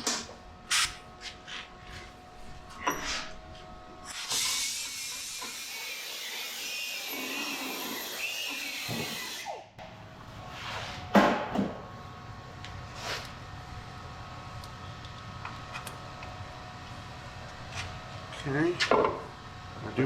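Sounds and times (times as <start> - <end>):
angle grinder whining: 4.2 - 9.7.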